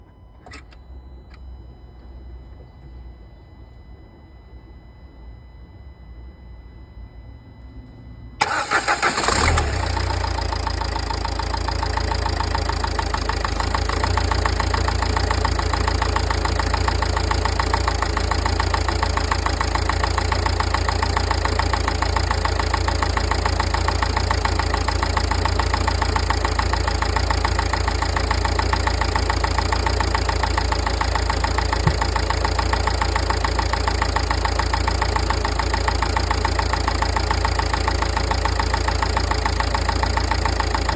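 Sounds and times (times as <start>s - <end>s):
diesel engine idling: 8.4s - 40.9s
diesel engine starting: 8.4s - 40.9s.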